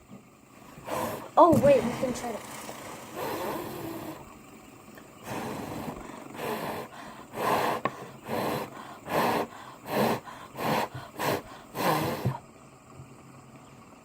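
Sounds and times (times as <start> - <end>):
person breathing out puffs: 5.3 - 12.4.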